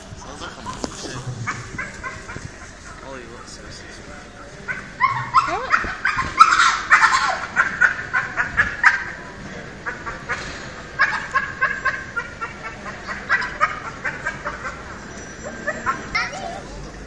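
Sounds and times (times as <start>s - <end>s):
dog making high-pitched cries: 4.7s - 9.2s, 11.0s - 17.0s.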